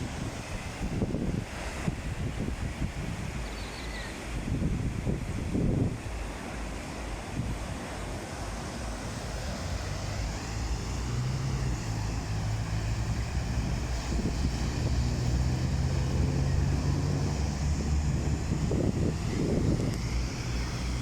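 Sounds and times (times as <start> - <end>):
wind buffeting microphone: 0.0 - 3.6, 4.2 - 21.0
sea surf: 0.0 - 21.0
low motor hum: 8.4 - 21.0.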